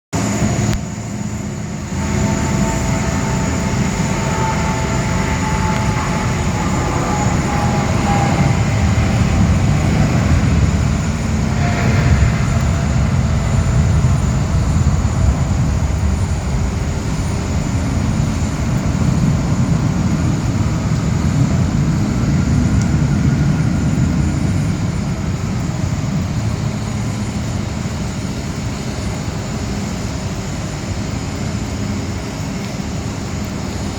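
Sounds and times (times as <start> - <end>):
faint high whine: 0.2 - 33.9
jet engines rumbling: 0.2 - 33.9.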